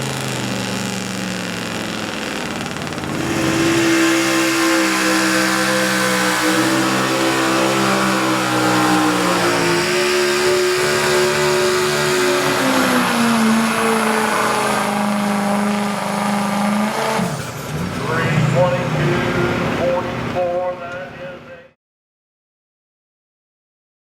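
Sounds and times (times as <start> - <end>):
truck engine revving hard under load: 0.0 - 20.4.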